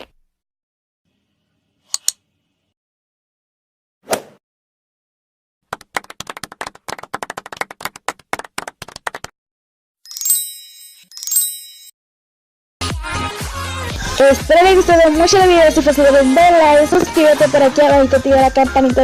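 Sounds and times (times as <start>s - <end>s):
rapid sharp claps: 5.7s - 9.3s
bright ringing dings: 10.1s - 11.9s.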